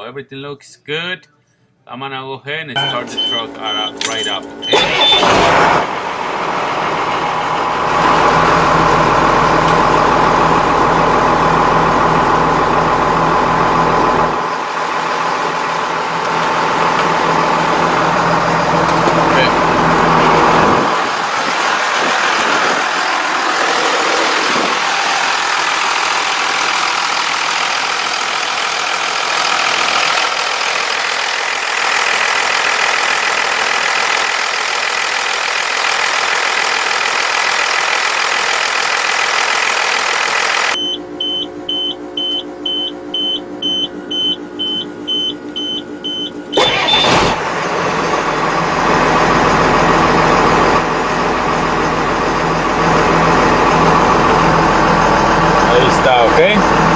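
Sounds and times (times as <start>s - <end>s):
high electronic beeping: 2.8s - 5.3s, 40.8s - 47.2s
diesel truck engine running: 2.8s - 56.9s
loud burst: 4.7s - 6.3s, 46.6s - 47.6s.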